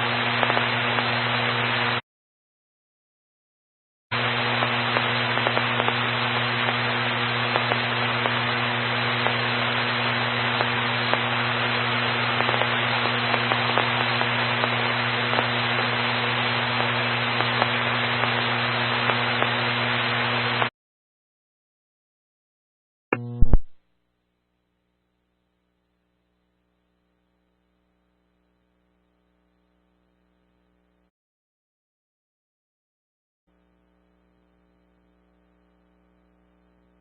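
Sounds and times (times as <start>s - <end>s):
radio static hiss: 0.0s - 2.0s, 4.1s - 20.7s
faint crackles: 4.2s - 20.7s.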